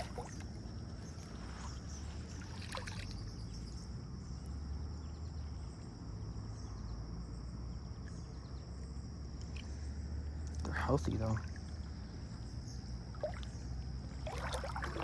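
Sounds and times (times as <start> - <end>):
rushing river water: 0.0 - 3.2, 13.1 - 15.0.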